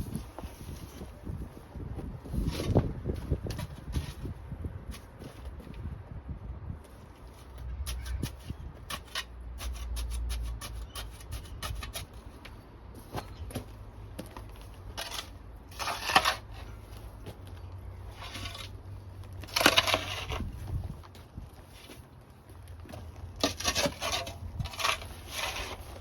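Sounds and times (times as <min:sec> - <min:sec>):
shovel scraping: 0:07.8 - 0:13.7, 0:14.9 - 0:17.1, 0:18.0 - 0:20.8, 0:22.9 - 0:26.0.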